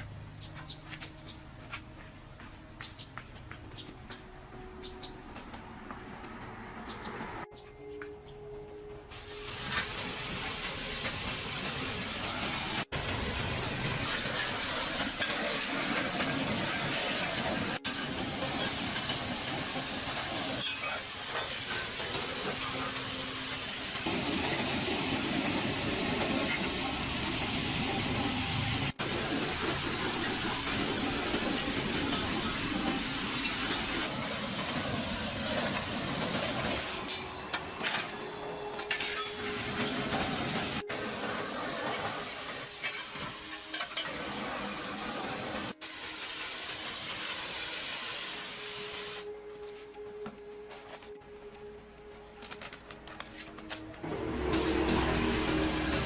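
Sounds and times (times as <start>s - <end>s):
spraying hiss: 9.1s - 37.0s, 39.3s - 49.3s, 54.5s - 56.0s.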